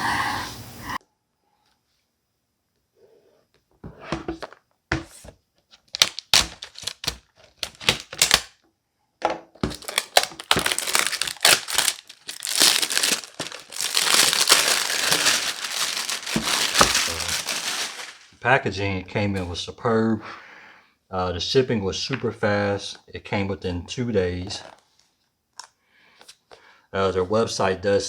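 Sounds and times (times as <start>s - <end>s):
packaging crinkling and rustling: 5.8s - 8.5s, 9.6s - 18.4s
tape and cardboard ripping: 5.9s - 8.5s, 9.7s - 18.4s.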